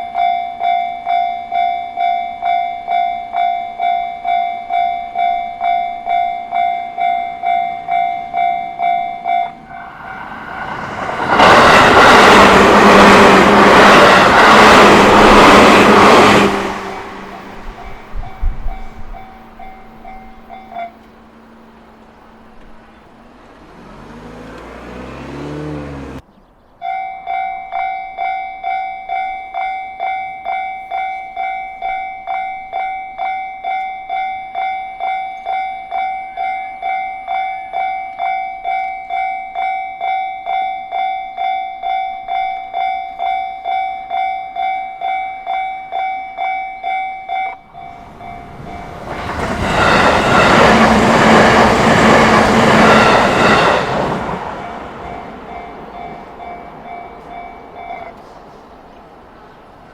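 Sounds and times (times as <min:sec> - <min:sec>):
level crossing bell clanging: 0:00.0 - 0:10.4, 0:17.2 - 0:24.7, 0:26.8 - 0:50.5, 0:54.6 - 0:58.4
road vehicle passing: 0:09.2 - 0:26.7, 0:47.6 - 0:59.9.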